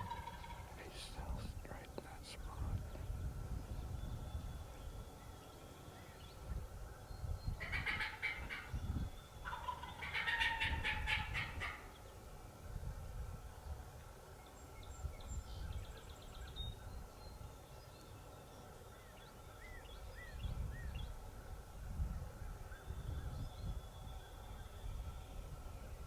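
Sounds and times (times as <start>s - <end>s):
turkey gobbling: 0.0s - 0.7s, 7.6s - 8.7s, 9.4s - 11.9s.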